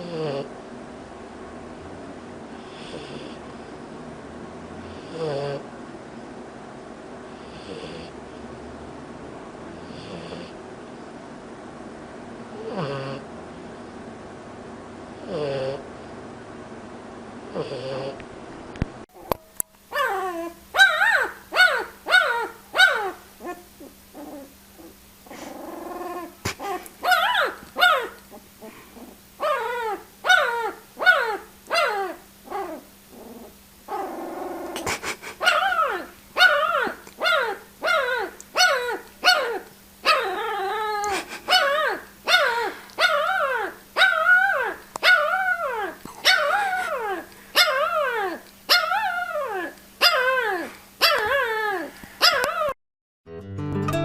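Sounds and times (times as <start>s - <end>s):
guitar music: 53.3s - 54.0s.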